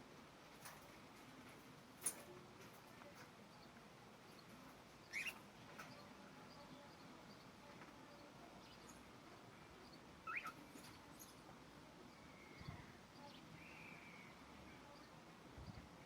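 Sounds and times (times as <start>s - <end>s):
cockatiel chirps: 5.1s - 5.4s, 10.2s - 10.6s.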